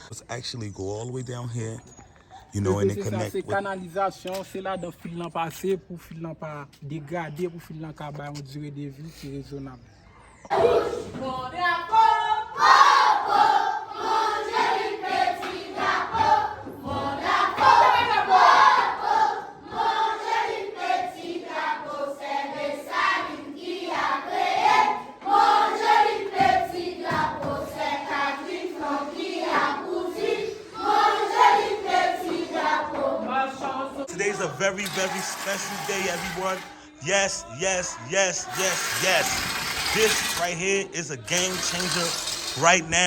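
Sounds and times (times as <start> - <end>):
voices singing in chorus: 10.4 - 43.0.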